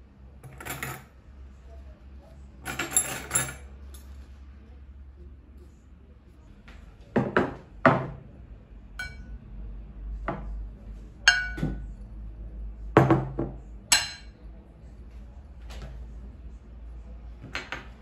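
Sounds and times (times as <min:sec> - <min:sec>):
dishes and glassware clinking: 0:02.6 - 0:04.1, 0:09.0 - 0:09.3, 0:11.2 - 0:12.0, 0:13.0 - 0:14.4.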